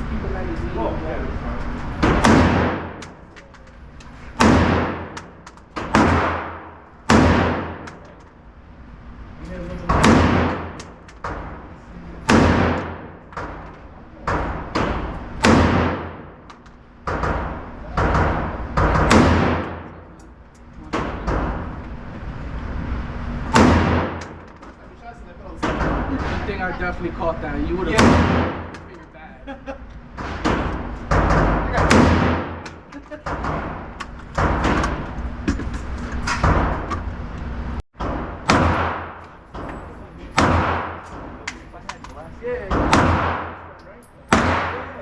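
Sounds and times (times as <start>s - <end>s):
loud gunshots echoing: 2.0s - 3.3s, 4.4s - 8.2s, 9.9s - 20.1s, 23.5s - 24.5s, 27.8s - 28.9s, 30.2s - 35.0s, 38.0s - 39.6s, 40.3s - 41.4s, 42.7s - 45.0s.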